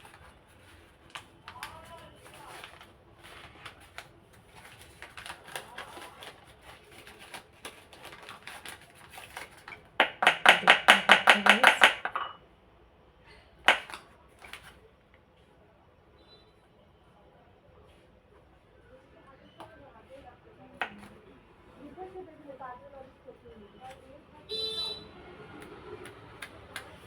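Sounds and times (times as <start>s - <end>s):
sharp knocks on worktop: 10.0s - 12.4s, 13.7s - 14.0s.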